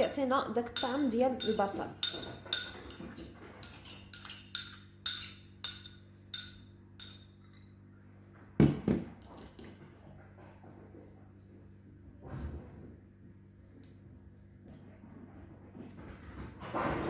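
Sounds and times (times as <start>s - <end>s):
utensil clinking on metal strainer: 0.7s - 7.7s.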